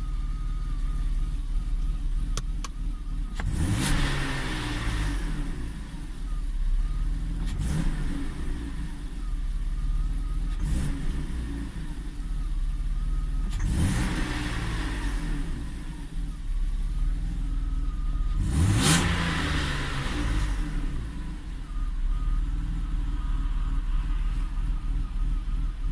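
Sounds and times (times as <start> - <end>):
rough engine idle: 0.0 - 3.4, 15.4 - 18.4, 19.3 - 25.9
car engine revving: 0.0 - 25.9.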